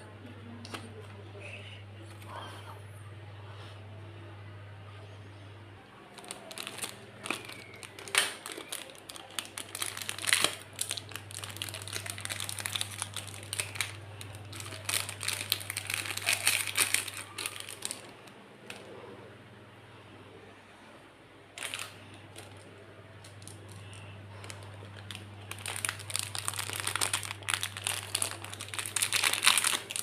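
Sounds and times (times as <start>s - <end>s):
steady low hum: 0.0s - 30.0s
packaging crinkling and rustling: 6.1s - 18.9s, 21.6s - 30.0s.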